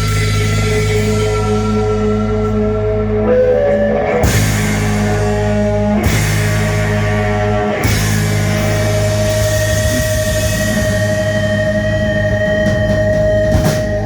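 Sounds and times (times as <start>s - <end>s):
cymbal wash: 0.0s - 3.1s
loud rock music: 0.0s - 14.0s.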